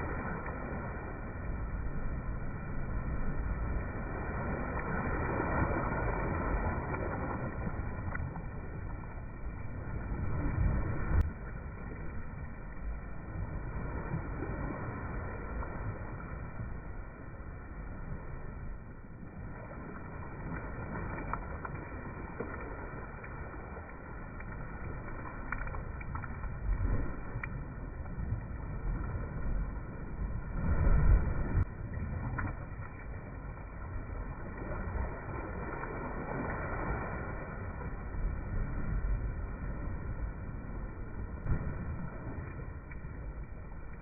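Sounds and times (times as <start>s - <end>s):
waves washing at the shore: 0.0s - 44.0s.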